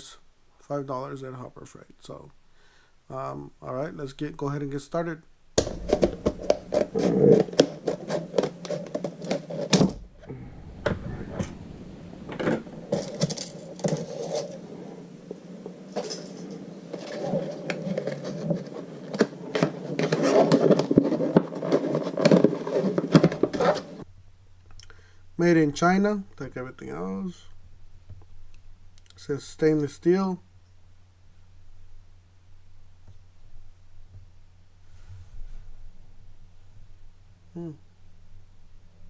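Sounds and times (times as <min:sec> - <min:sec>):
sharp clicks: 0:28.5 - 0:29.2.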